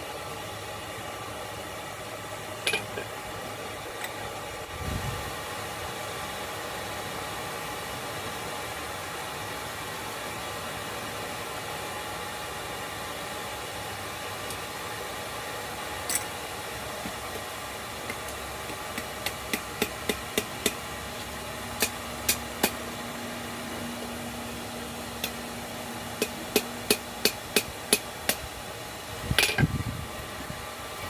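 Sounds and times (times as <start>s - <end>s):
steady background noise: 0.0s - 31.0s
hammer striking steel on anvil: 21.8s - 22.8s, 26.2s - 28.4s.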